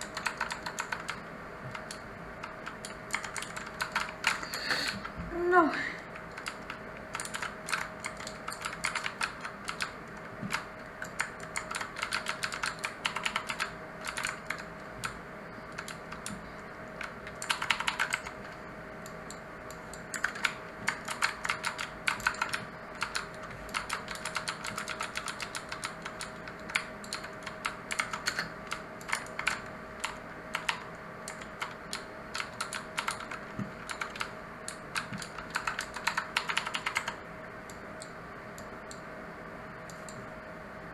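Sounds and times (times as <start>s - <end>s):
mechanical keyboard typing: 0.0s - 4.5s, 6.2s - 16.4s, 17.0s - 39.0s
faint steady hum: 0.0s - 40.9s.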